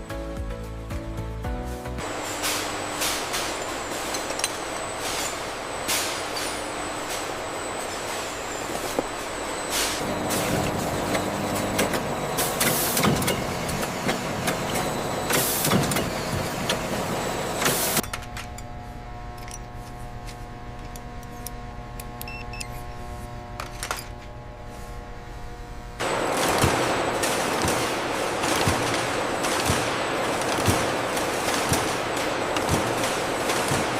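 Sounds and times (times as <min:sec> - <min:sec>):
machinery clattering: 0:02.0 - 0:18.6, 0:26.0 - 0:33.9
steady machine hum: 0:02.0 - 0:33.9.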